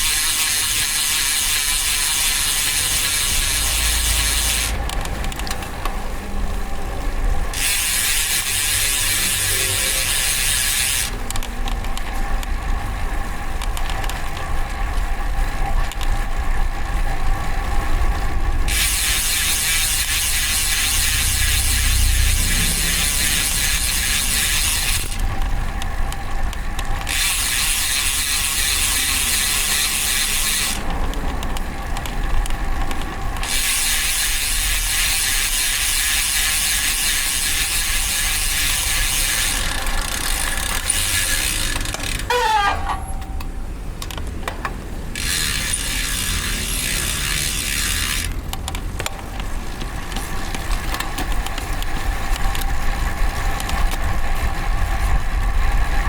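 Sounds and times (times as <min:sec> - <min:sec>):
bicycle freehub buzzing: 0:00.0 - 0:56.0
rumble of wind and tyres: 0:00.0 - 0:56.0
short wavering squeal: 0:42.3 - 0:43.5.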